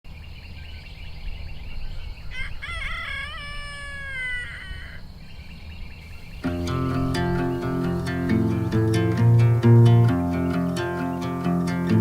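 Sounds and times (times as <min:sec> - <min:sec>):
faint bird chirps: 0:00.1 - 0:09.0
rooster crowing: 0:02.3 - 0:05.1.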